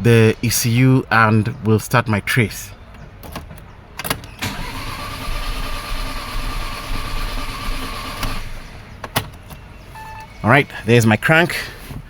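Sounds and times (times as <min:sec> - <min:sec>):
starter motor cranking engine: 0:04.4 - 0:09.0.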